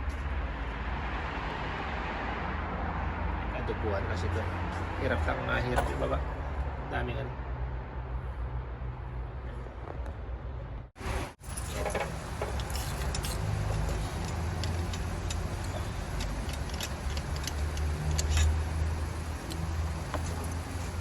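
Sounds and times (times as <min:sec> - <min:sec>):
steady low hum: 0:11.0 - 0:21.0
hand tools clinking on metal: 0:11.5 - 0:21.0.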